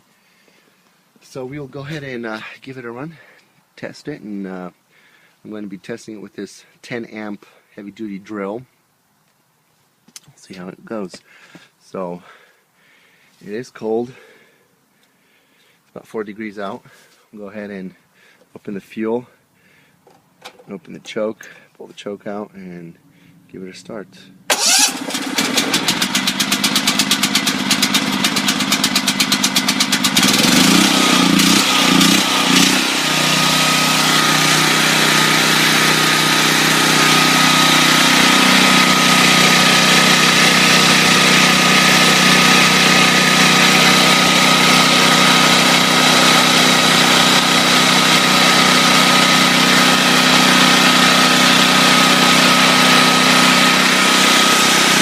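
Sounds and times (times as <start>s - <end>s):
generator engine running: 24.4s - 55.0s.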